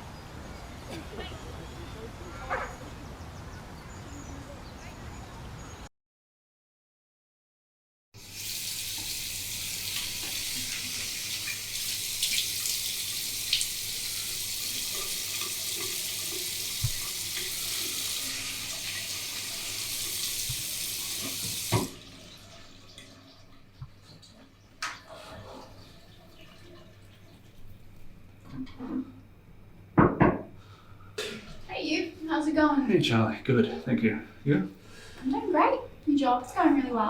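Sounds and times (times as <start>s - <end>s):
running water: 8.2s - 28.1s
knock: 30.0s - 30.5s.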